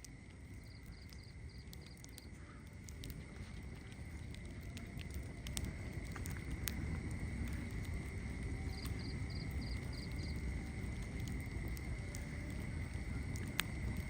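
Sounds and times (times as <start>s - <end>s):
faint high ticks: 0.0s - 10.4s
wood fire crackling: 0.0s - 14.0s.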